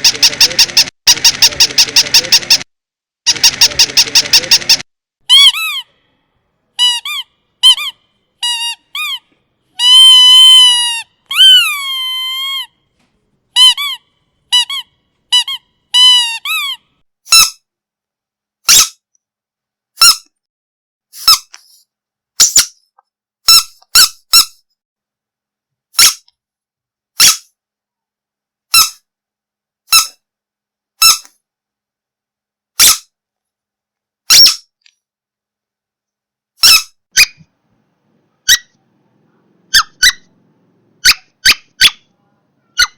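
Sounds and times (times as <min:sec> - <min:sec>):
dog toy squeaking: 0:00.0 - 0:02.6, 0:03.3 - 0:06.0, 0:06.8 - 0:12.7, 0:13.6 - 0:17.6, 0:18.7 - 0:19.0, 0:20.0 - 0:20.3, 0:22.4 - 0:22.8, 0:23.5 - 0:24.6, 0:27.2 - 0:27.5, 0:28.7 - 0:29.0, 0:29.9 - 0:30.2, 0:31.0 - 0:31.4, 0:32.8 - 0:33.1, 0:34.3 - 0:34.8, 0:36.6 - 0:37.5, 0:38.4 - 0:38.8, 0:39.7 - 0:40.3, 0:41.0 - 0:42.1, 0:42.7 - 0:42.9
hissy high toy squeaks: 0:00.0 - 0:02.6, 0:03.3 - 0:06.0, 0:06.8 - 0:12.7, 0:13.6 - 0:17.6, 0:18.7 - 0:19.0, 0:20.0 - 0:20.4, 0:21.2 - 0:21.8, 0:22.4 - 0:22.8, 0:23.5 - 0:24.6, 0:26.0 - 0:26.3, 0:27.2 - 0:27.5, 0:28.7 - 0:29.1, 0:29.9 - 0:30.2, 0:31.0 - 0:31.3, 0:32.8 - 0:33.1, 0:34.3 - 0:34.8, 0:36.6 - 0:37.5, 0:38.5 - 0:38.8, 0:39.7 - 0:40.3, 0:41.0 - 0:42.1, 0:42.7 - 0:42.9.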